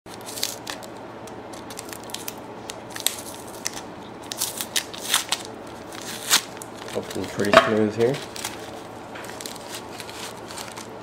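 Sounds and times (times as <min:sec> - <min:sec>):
packaging crinkling: 0:00.1 - 0:11.0.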